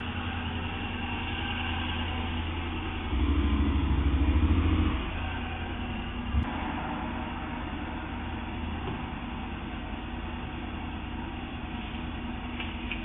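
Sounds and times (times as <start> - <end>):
vehicle engine hum: 0.0 - 13.0.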